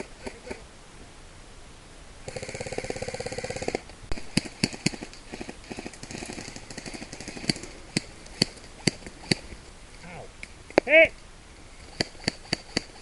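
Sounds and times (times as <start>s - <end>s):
airsoft gun bursts: 2.3s - 9.5s, 11.8s - 13.0s.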